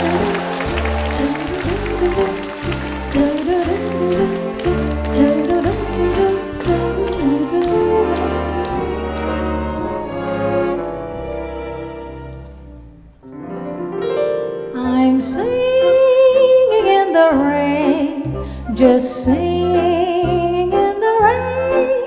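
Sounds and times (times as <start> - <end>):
woman singing with vibrato: 0.0 - 9.5, 14.8 - 22.0
orchestra playing: 0.0 - 22.0.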